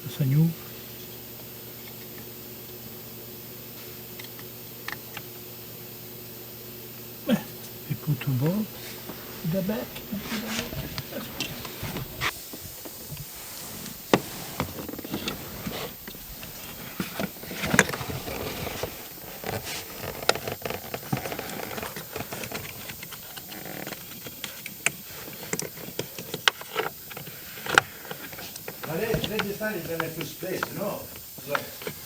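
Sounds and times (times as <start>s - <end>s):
hand tools clicking and knocking: 20.1s - 32.0s.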